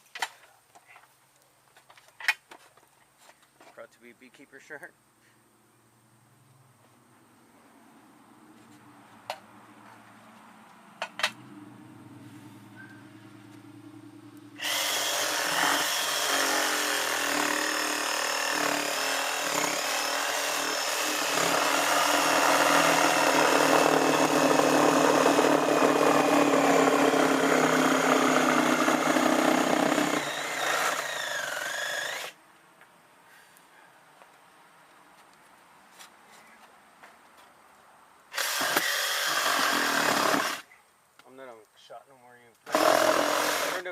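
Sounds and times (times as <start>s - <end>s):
electric power tool running: 14.6s - 32.4s, 38.4s - 40.6s, 42.7s - 43.8s.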